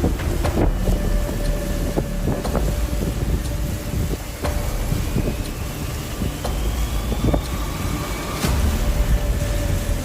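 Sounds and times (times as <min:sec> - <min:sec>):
strong wind buffeting microphone: 0:00.0 - 0:10.0.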